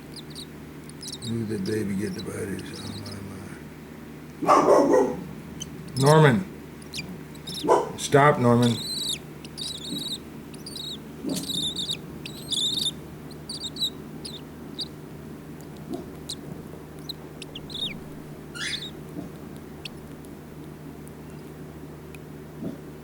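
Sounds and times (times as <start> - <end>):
baby bird begging chirps: 0.0 - 3.5, 4.4 - 20.5, 21.2 - 21.5.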